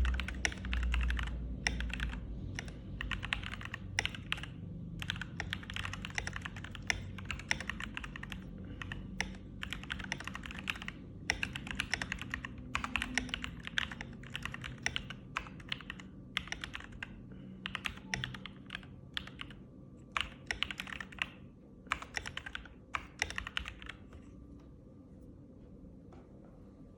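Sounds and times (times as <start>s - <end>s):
mechanical keyboard typing: 0.0s - 24.2s.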